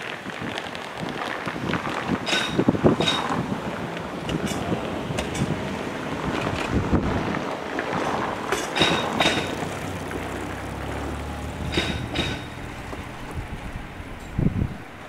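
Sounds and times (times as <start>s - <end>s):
train wheels clacking over rail joints: 0.0s - 10.6s, 11.5s - 14.5s
low motor hum: 9.6s - 15.0s.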